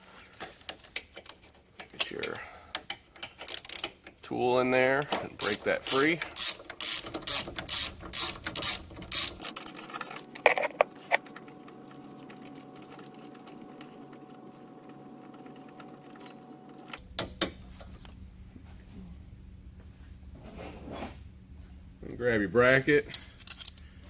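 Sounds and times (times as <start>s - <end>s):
faint steady hum: 0.0s - 24.0s
socket ratchet clicking: 5.4s - 9.4s.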